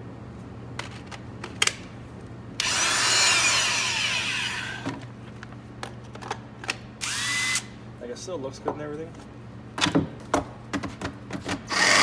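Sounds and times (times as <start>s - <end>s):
cordless power drill running: 11.7s - 12.0s.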